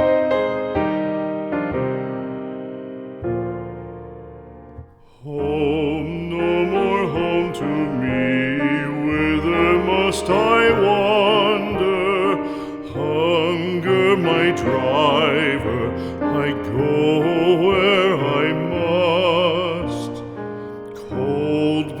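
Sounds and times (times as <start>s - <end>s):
piano accompaniment: 0.0s - 22.0s
person singing with vibrato: 5.0s - 22.0s.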